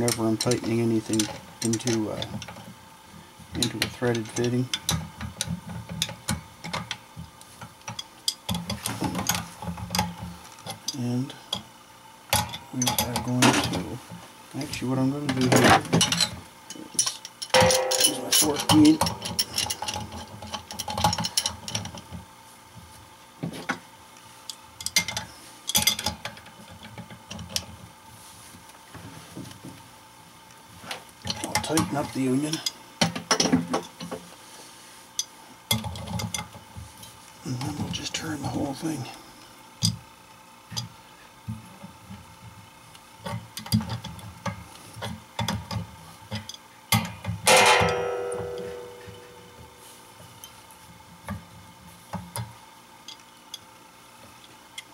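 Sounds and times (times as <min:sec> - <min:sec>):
hand tools clattering on metal: 0:15.3 - 0:21.9, 0:47.0 - 0:49.6
loud metallic clang: 0:17.6 - 0:19.0, 0:47.5 - 0:49.5.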